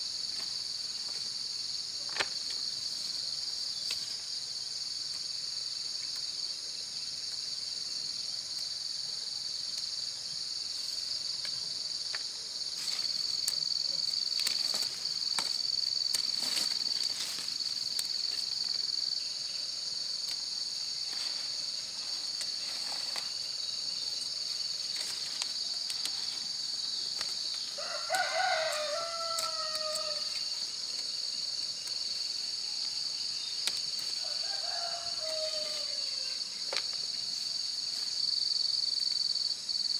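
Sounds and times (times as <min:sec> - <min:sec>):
insects droning: 0:00.0 - 0:39.9
rooster crowing: 0:27.6 - 0:30.6, 0:34.1 - 0:36.6.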